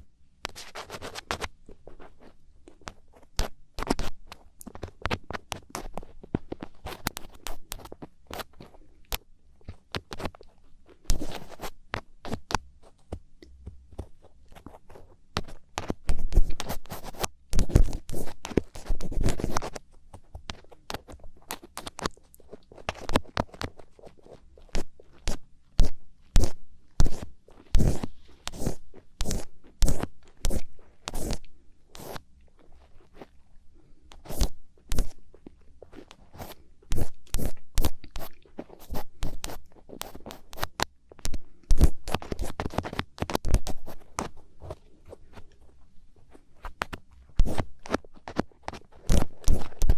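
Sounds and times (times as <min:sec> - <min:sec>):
ear pick scraping: 0:25.2 - 0:33.4.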